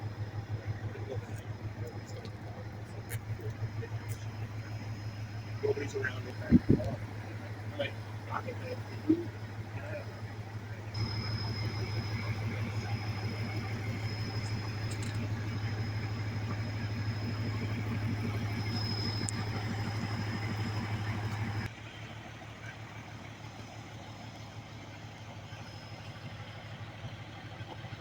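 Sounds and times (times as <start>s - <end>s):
engine idling: 0.0s - 28.0s.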